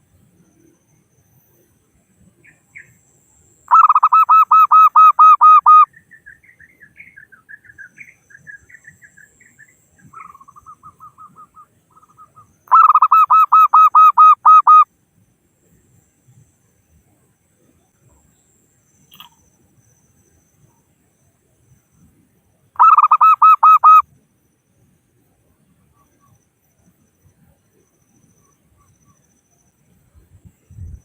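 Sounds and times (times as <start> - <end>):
dove cooing: 3.7 - 5.9, 10.2 - 14.8, 22.8 - 24.0
high bird chirping: 3.7 - 14.8, 22.8 - 24.0.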